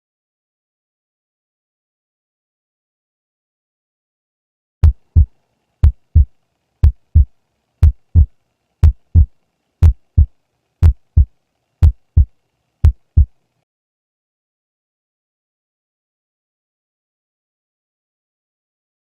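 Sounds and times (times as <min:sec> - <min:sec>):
heartbeat through a stethoscope: 0:04.8 - 0:13.4.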